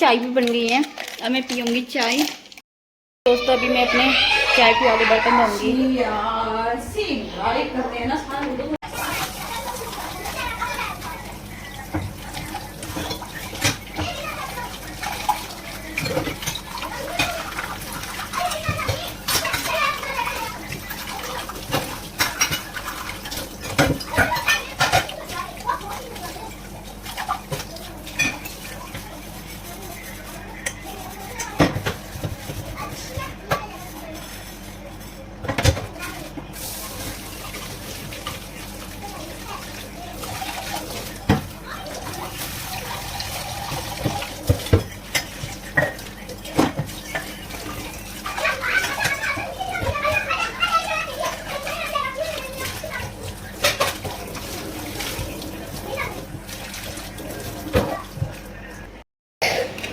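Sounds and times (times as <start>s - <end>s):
water running: 0.0s - 2.6s, 3.3s - 34.8s, 36.0s - 58.8s, 59.4s - 59.9s
cups and pan clinking: 44.0s - 47.4s, 59.4s - 59.9s
cups and pots clinking: 59.4s - 59.9s.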